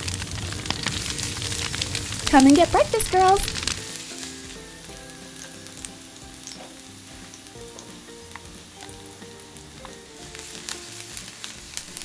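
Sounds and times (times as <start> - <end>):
faint crackling pops: 0.0 - 9.0
food frying sizzle: 0.0 - 12.0.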